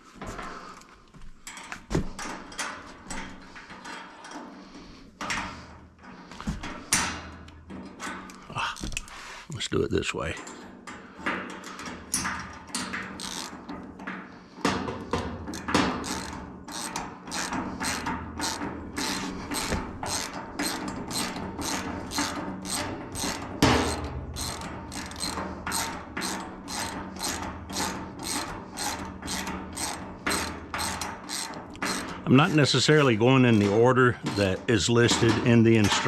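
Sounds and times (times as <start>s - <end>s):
scrapes and knocks: 10.4s - 36.0s
ratchet wrench clicking: 12.9s - 13.6s, 15.5s - 32.6s.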